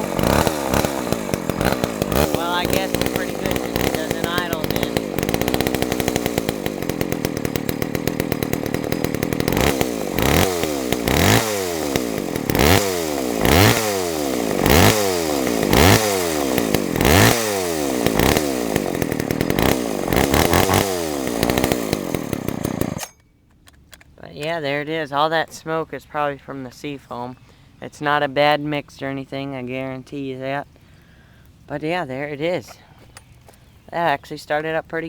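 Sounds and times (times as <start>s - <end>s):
chainsaw revving: 0.0s - 23.2s.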